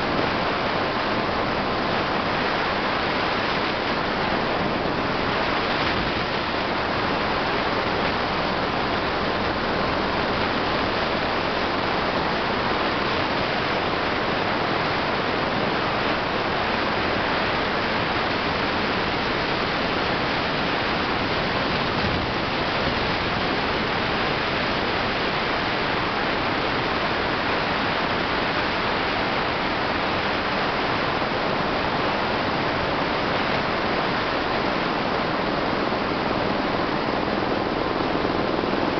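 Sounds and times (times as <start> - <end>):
helicopter hovering: 34.6 - 38.9.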